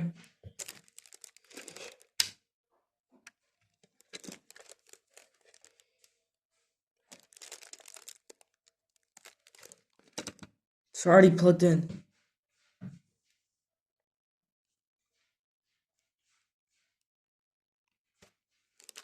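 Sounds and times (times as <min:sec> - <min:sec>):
handling rustling and scraping: 0:00.5 - 0:02.2, 0:03.3 - 0:10.5, 0:18.2 - 0:19.0.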